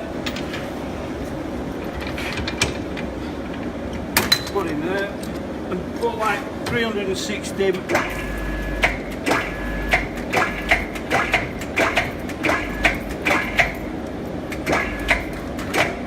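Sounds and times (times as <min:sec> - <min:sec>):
sharp clicks and knocks: 0:01.8 - 0:05.5, 0:08.8 - 0:16.0
machine motor hum: 0:07.8 - 0:16.0.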